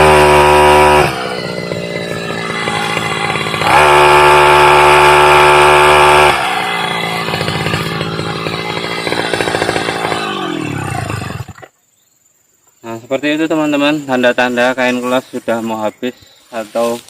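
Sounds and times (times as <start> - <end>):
brush cutter engine revving: 0.0 - 11.8.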